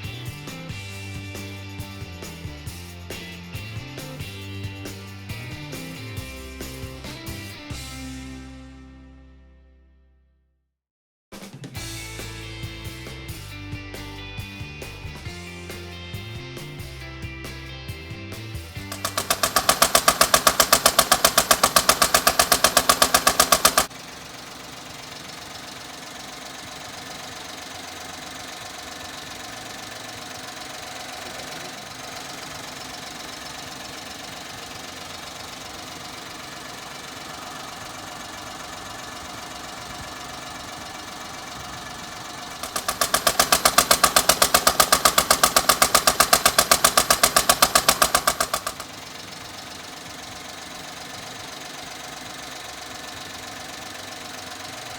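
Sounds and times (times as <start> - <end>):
engine rapid knocking: 0.0 - 7.9, 18.8 - 54.9
engine hum: 0.0 - 9.3, 11.8 - 54.9.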